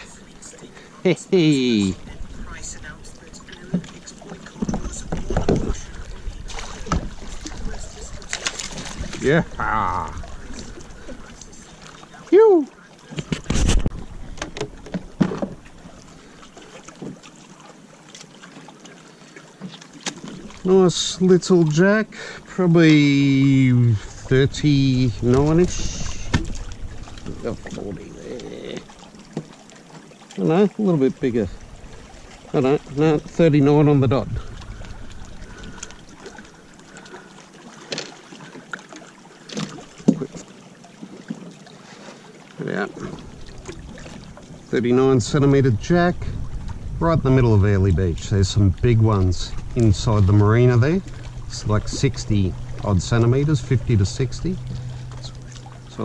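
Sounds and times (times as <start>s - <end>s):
water lapping around kayak: 0.0s - 56.0s
knocks on hull: 6.5s - 7.3s, 13.2s - 15.6s, 26.1s - 27.8s.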